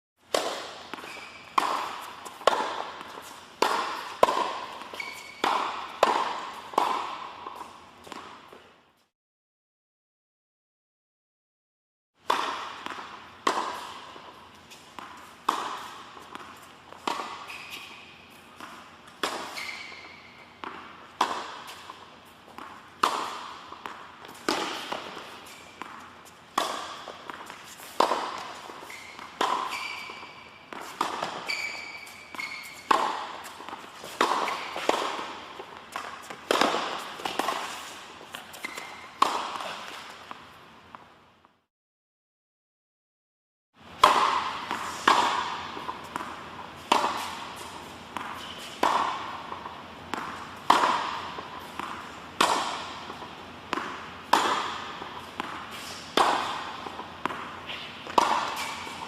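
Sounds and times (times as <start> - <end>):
tennis ball hits: 0.3 - 8.6, 12.2 - 40.5, 43.8 - 59.0
shoe squeaks: 0.9 - 2.4, 4.0 - 6.0, 17.3 - 18.5, 19.4 - 20.6, 27.6 - 34.9, 37.6 - 39.8, 47.2 - 48.8, 57.7 - 59.0.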